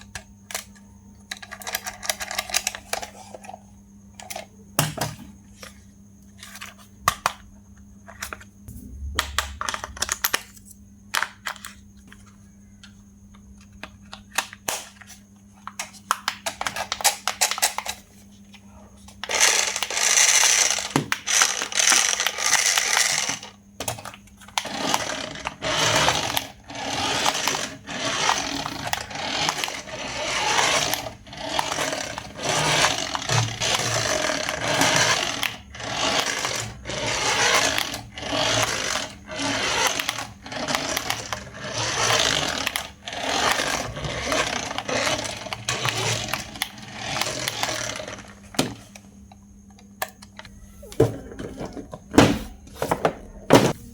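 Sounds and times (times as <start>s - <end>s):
small motor whirring in bursts: 19.3s - 23.6s, 24.5s - 48.6s.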